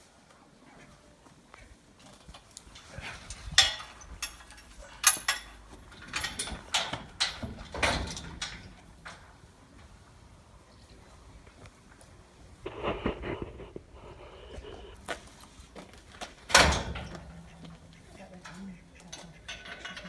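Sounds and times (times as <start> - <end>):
scaffold parts knocking and scraping: 2.8 - 10.1, 16.0 - 20.0
sharp metal clanks: 3.3 - 9.4, 16.5 - 20.0.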